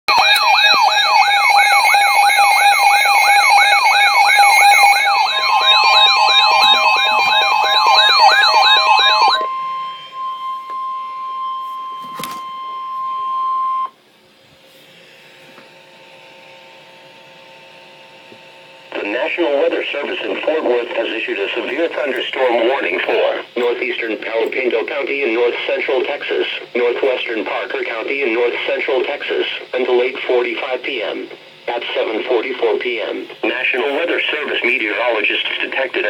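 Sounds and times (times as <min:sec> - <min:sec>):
electronic siren tone sweeping: 0:00.1 - 0:13.9
steady alert tone: 0:00.1 - 0:13.9.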